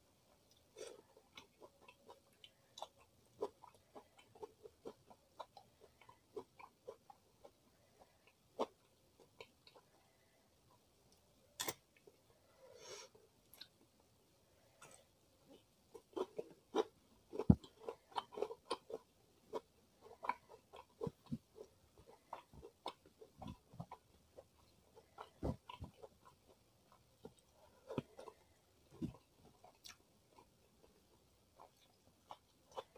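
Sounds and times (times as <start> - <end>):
chewing food: 0.0 - 12.5, 13.4 - 13.9, 14.6 - 32.9
crunchy clicks and mouth sounds: 14.7 - 32.9.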